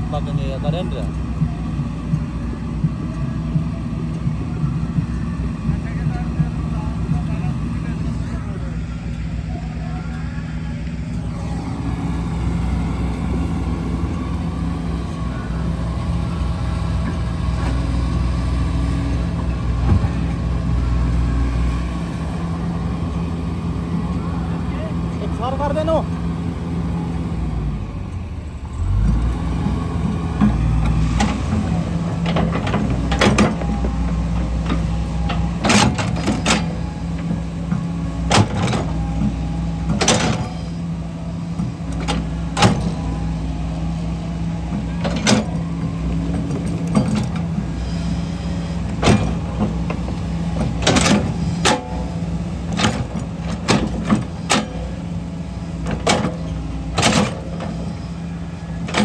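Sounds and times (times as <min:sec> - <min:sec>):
heavy diesel machinery running: 0:00.0 - 0:59.0
sharp clanks and knocks: 0:29.0 - 0:59.0.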